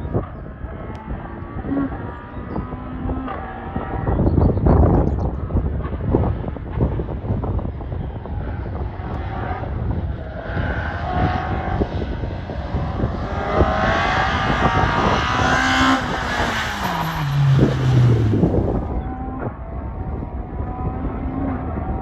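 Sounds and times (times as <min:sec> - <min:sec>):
car engine running hard: 0:00.0 - 0:22.0
heavy rumbling noise: 0:11.4 - 0:21.1.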